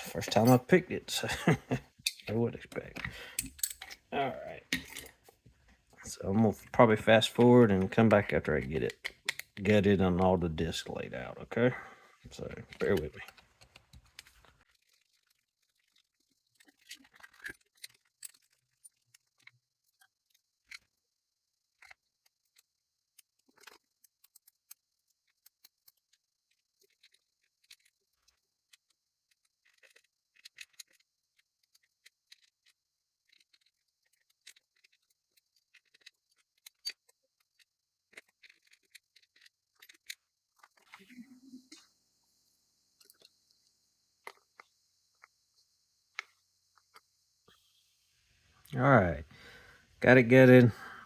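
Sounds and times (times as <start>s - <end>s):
small metal parts clicking: 12.7s - 21.0s, 21.7s - 41.0s.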